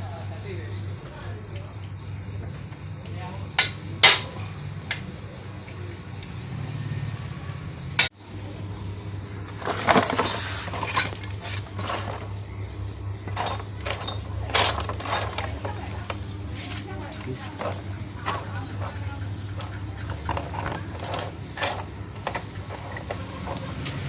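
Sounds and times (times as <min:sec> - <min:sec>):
steady low hum: 0:00.0 - 0:24.0
metal tools clinking: 0:09.6 - 0:12.4, 0:13.2 - 0:24.0.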